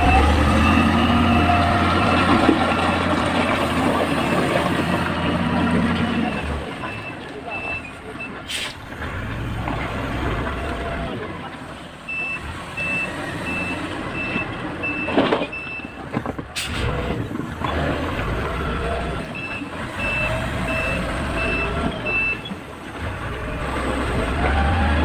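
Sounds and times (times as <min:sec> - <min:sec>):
reversing alarm beeping: 0:00.0 - 0:03.1, 0:12.1 - 0:16.0, 0:19.3 - 0:22.5
diesel engine running: 0:00.0 - 0:25.0.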